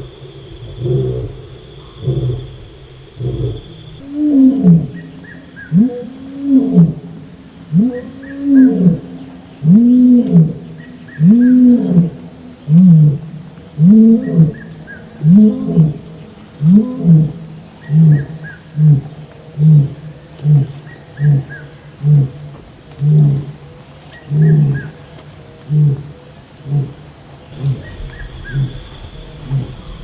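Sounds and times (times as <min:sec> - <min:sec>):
lion roaring: 0:00.6 - 0:23.6, 0:24.2 - 0:25.0, 0:25.7 - 0:30.0.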